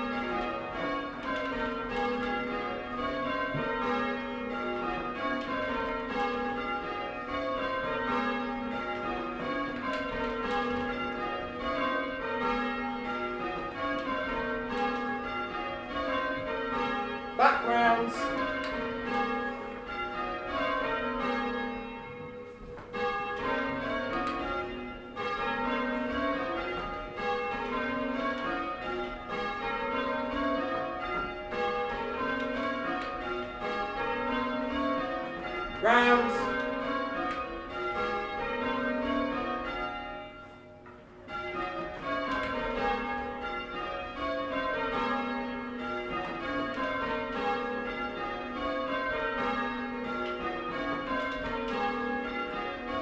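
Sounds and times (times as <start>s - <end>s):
church bells ringing: 0.0s - 53.0s
person shouting a call: 17.4s - 18.3s, 35.8s - 36.5s.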